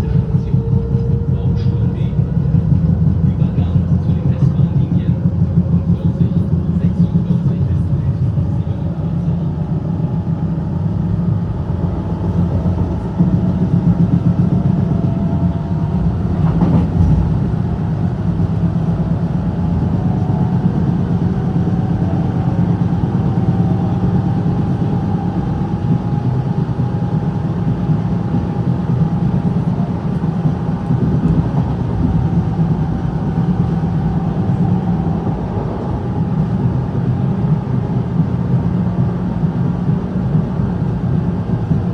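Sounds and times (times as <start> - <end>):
train wheels rumbling on track: 0.0 - 41.9
train car body rattling: 11.6 - 20.6, 21.4 - 36.2.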